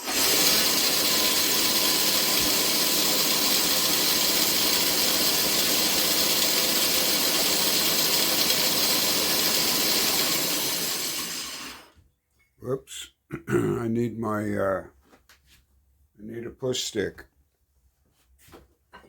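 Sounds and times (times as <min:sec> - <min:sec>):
woodworking machine whirring: 0:00.0 - 0:12.0.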